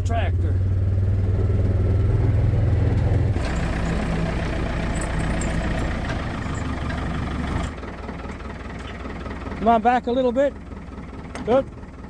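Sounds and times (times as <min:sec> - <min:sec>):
vehicle engine running: 0:00.0 - 0:12.0
rattle: 0:03.3 - 0:09.5.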